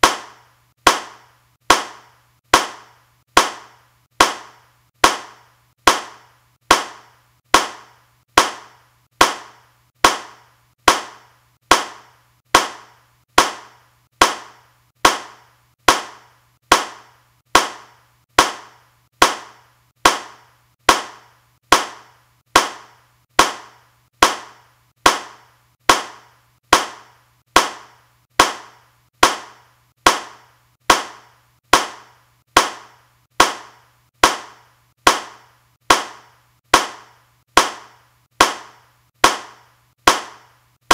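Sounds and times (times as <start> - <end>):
hand clapping: 0.0 - 17.0, 27.6 - 37.0.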